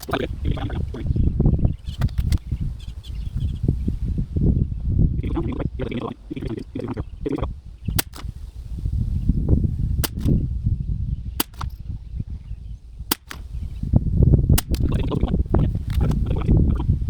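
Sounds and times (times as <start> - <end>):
low wind rumble: 0.0 - 17.0
rifle click: 7.9 - 8.6, 10.0 - 10.4, 11.4 - 11.8, 13.1 - 13.8, 14.6 - 15.0
rifle shots cracking: 8.0 - 8.6, 10.0 - 10.5, 11.4 - 11.9, 13.1 - 13.8, 14.6 - 15.1.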